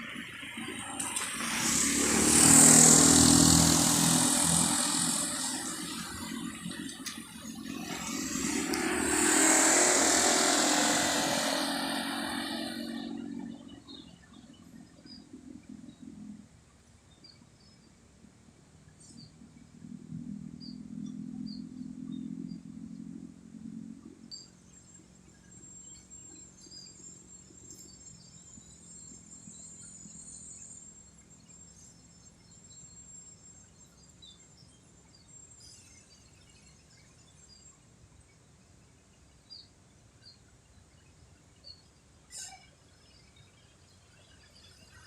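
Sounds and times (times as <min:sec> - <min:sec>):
vehicle passing by: 0:00.0 - 0:14.1.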